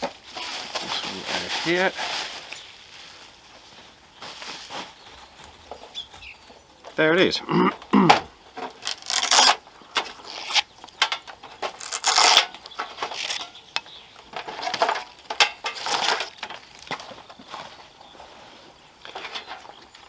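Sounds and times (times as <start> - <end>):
packaging rustling: 0.0 - 3.4, 8.6 - 13.6
metal parts clinking and scraping: 8.6 - 13.6, 14.3 - 17.1.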